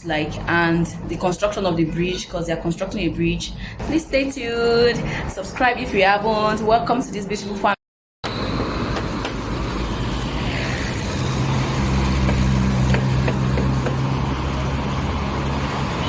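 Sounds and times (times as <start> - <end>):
road traffic: 8.2 - 16.0
nearby vehicle engine running: 8.3 - 16.0.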